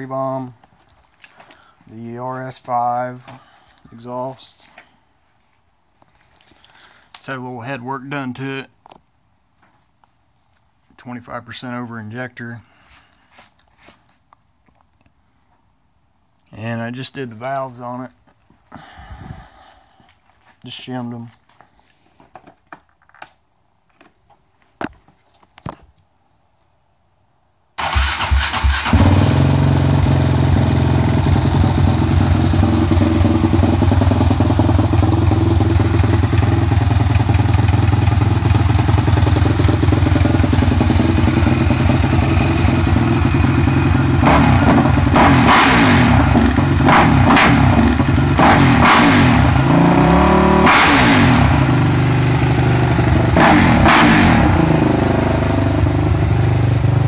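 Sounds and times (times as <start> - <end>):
quad engine idling and revving: 27.9 - 57.0.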